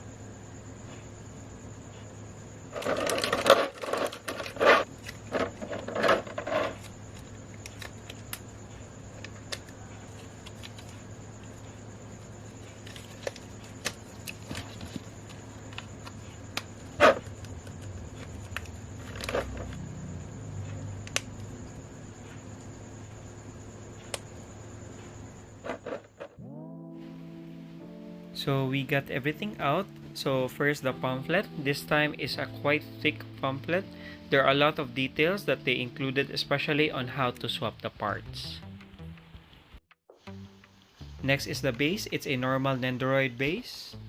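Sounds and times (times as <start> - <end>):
plastic packaging crinkling: 12.7 - 15.8.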